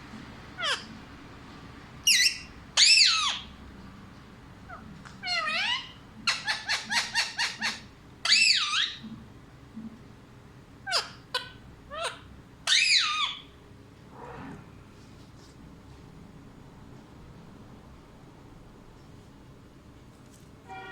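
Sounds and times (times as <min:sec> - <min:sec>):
parrot squawks and whistles: 0:05.4 - 0:09.0, 0:12.7 - 0:13.4.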